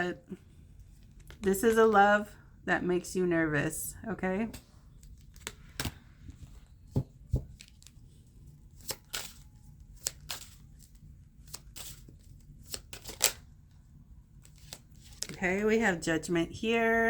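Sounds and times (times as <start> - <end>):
cards being shuffled: 5.0 - 8.0, 8.8 - 13.4, 14.4 - 15.4.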